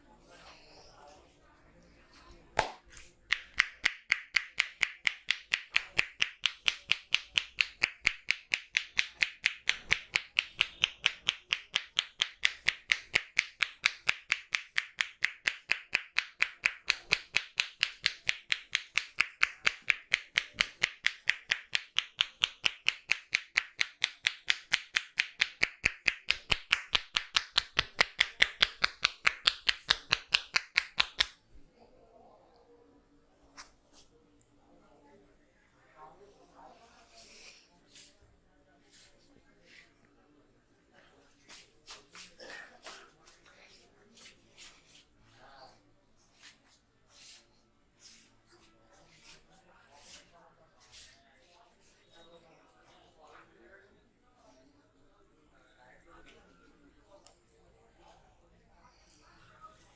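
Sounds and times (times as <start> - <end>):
hands slapping body: 2.6 - 31.4.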